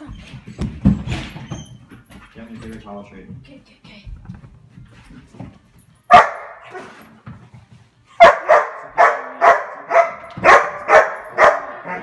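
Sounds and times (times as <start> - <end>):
dog barking: 6.1 - 6.9, 8.2 - 12.0.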